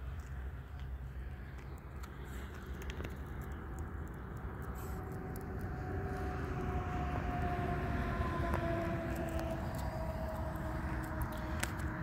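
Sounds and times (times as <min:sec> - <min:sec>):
road vehicle rumbling: 0:00.0 - 0:12.0.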